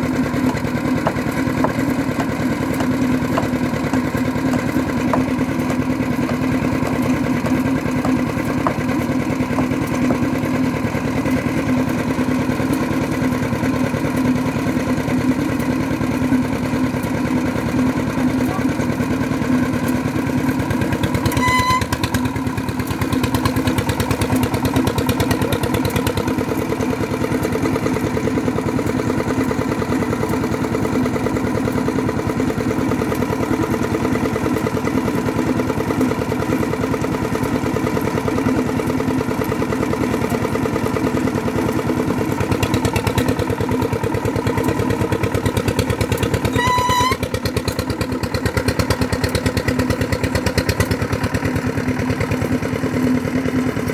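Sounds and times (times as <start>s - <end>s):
drilling rig engine running: 0.0s - 53.9s
short high-pitched tones: 21.3s - 22.0s, 46.5s - 47.3s.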